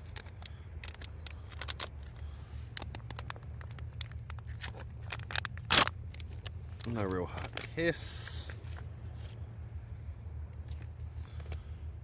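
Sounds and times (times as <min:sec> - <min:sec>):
plastic packet ripping: 0:00.0 - 0:06.5
plastic food packet crinkling: 0:00.0 - 0:07.8.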